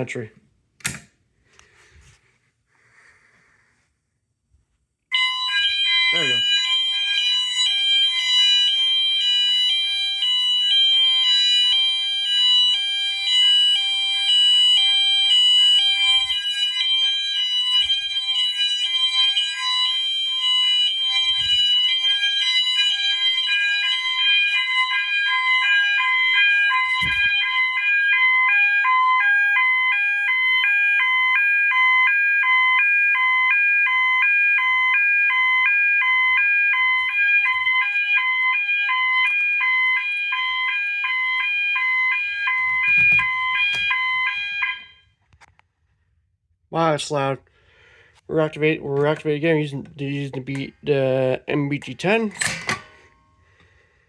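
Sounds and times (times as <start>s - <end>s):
electronic alarm horn tones: 5.1s - 45.1s
two-tone high-low alarm sounder: 5.1s - 45.1s, 51.3s - 53.8s.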